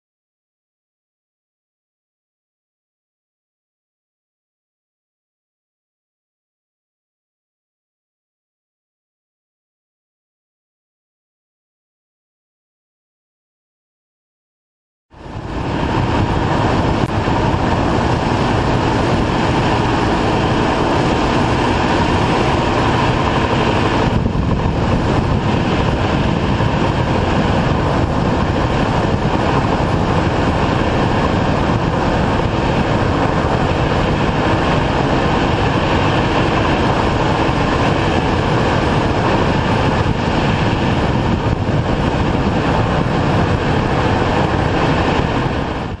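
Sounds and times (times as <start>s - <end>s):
road and tyre rumble: 15.1s - 46.0s.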